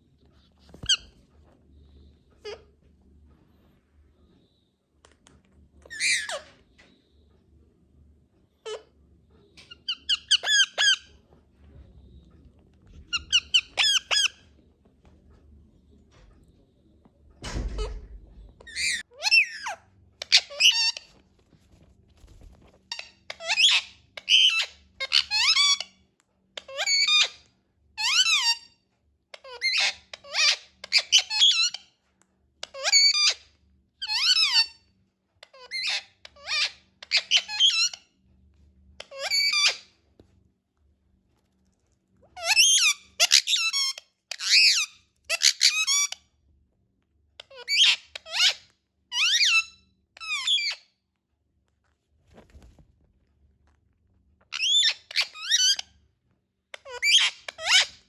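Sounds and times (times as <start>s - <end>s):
parakeet squeaky calls: 0.8s - 1.1s, 5.9s - 6.5s, 9.7s - 11.2s, 13.0s - 14.4s, 18.7s - 21.1s, 22.9s - 25.9s, 26.6s - 27.4s, 29.4s - 31.8s, 32.7s - 33.4s, 34.0s - 34.8s, 35.5s - 38.0s, 39.0s - 39.9s, 42.3s - 46.2s, 47.4s - 50.9s, 54.5s - 55.9s, 56.8s - 58.0s.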